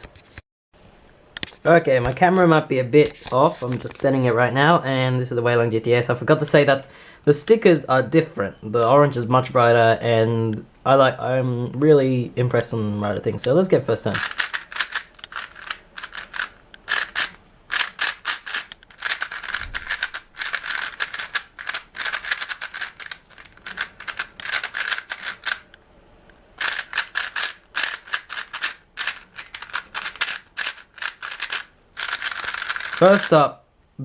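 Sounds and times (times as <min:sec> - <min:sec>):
plastic puzzle cube clicking: 0:14.2 - 0:25.7, 0:26.6 - 0:33.3.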